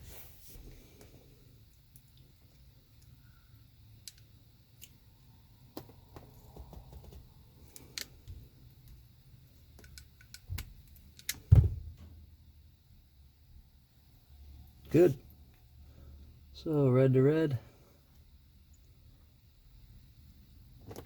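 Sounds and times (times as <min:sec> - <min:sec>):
low thump: 0:11.5 - 0:12.2.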